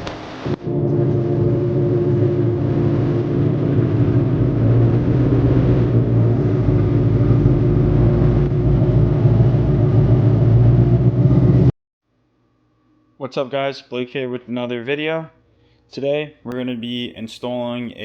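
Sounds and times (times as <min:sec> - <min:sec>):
car engine running: 0:00.5 - 0:11.7.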